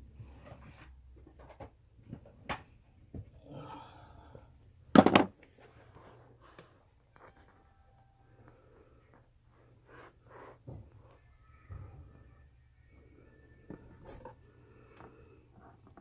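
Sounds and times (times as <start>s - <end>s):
handling clicks and knocks: 5.0s - 5.3s.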